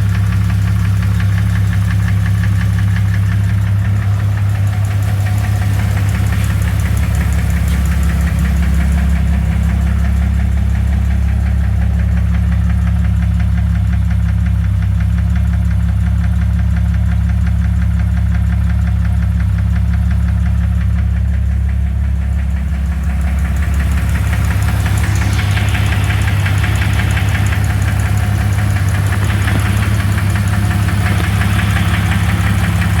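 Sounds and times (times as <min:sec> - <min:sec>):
car engine with rapid knock: 0:00.0 - 0:33.0
bright hiss: 0:23.0 - 0:33.0.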